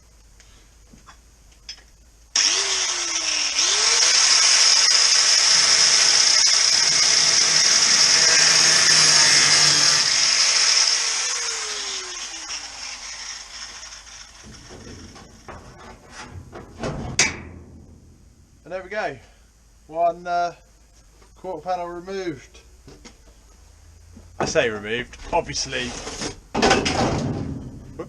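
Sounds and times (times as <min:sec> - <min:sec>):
angle grinder cutting sheet steel: 0:02.4 - 0:15.6.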